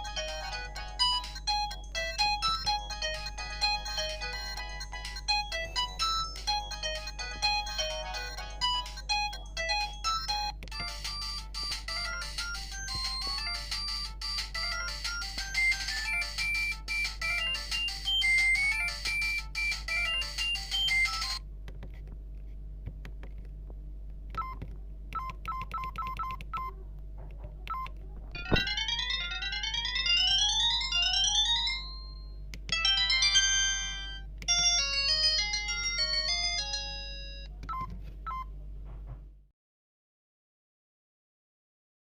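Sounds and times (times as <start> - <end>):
electronic ringtone melody: 0.0 - 21.4, 27.7 - 37.5
steady low hum: 0.0 - 39.4.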